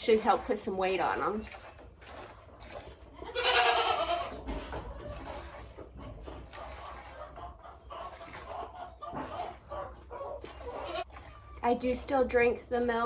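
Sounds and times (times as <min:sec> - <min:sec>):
goat bleating: 0:03.2 - 0:04.4, 0:10.6 - 0:11.0.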